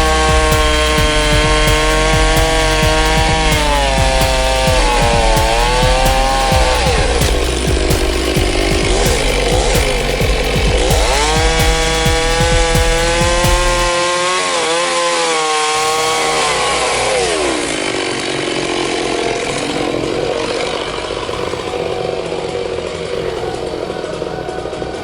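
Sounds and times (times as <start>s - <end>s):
chainsaw cutting tree trunk: 0.0s - 17.2s.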